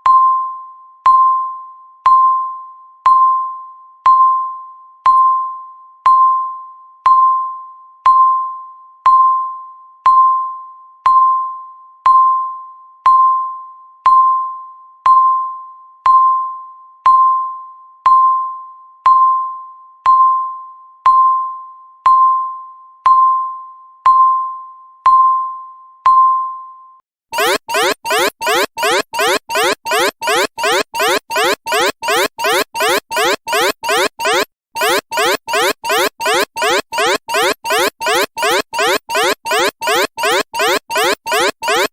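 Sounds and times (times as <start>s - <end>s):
timer beep: 27.4s - 41.9s.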